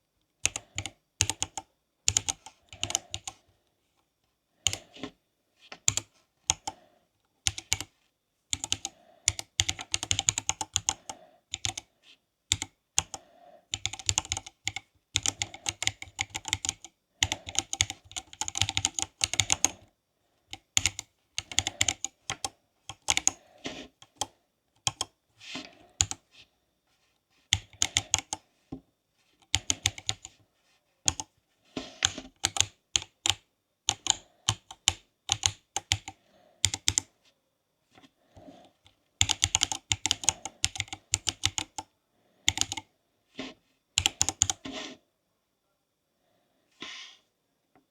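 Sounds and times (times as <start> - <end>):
mechanical keyboard typing: 0.4 - 3.4, 4.6 - 4.8, 5.8 - 6.8, 7.5 - 7.9, 8.5 - 11.9, 12.5 - 19.8, 20.5 - 23.4, 24.0 - 25.1, 26.0 - 26.2, 27.5 - 28.4, 29.4 - 30.4, 31.1 - 31.3, 32.0 - 37.1, 39.2 - 41.9, 42.5 - 42.9, 44.0 - 44.6.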